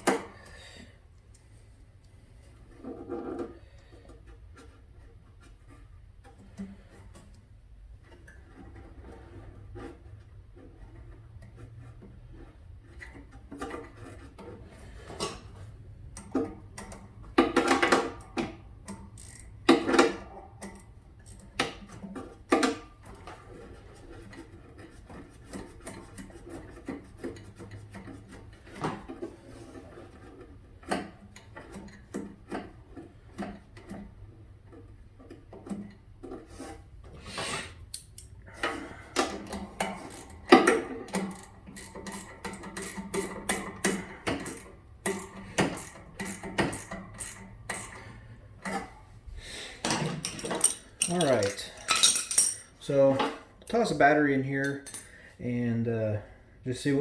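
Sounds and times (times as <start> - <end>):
tools scraping and clicking on mower: 2.5 - 37.2, 37.9 - 49.1, 49.8 - 54.0.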